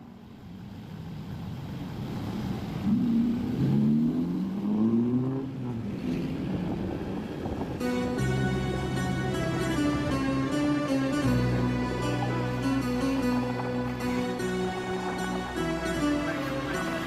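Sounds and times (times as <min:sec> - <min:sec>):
vehicle engine accelerating: 0:00.4 - 0:17.0.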